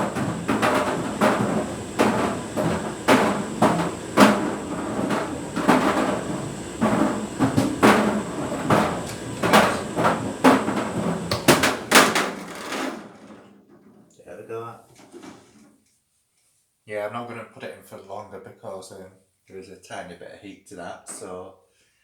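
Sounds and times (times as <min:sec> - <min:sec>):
tumble dryer running: 0:00.0 - 0:13.6
can knocking in dryer drum: 0:00.0 - 0:14.1.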